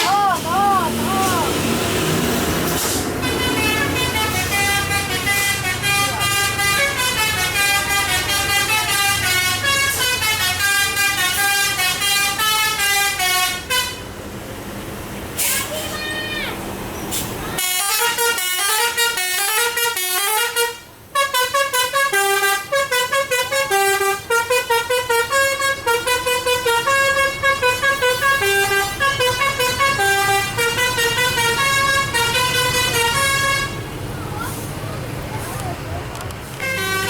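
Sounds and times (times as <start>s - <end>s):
bus musical horn tune: 2.7s - 14.2s, 17.6s - 34.0s, 36.6s - 37.0s.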